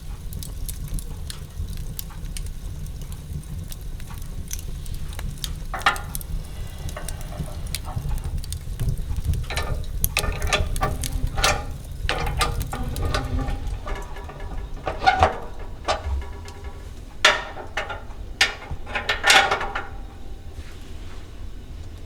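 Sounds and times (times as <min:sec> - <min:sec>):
hard objects clicking and knocking: 0:04.4 - 0:20.5
steady low rumble: 0:05.8 - 0:20.6.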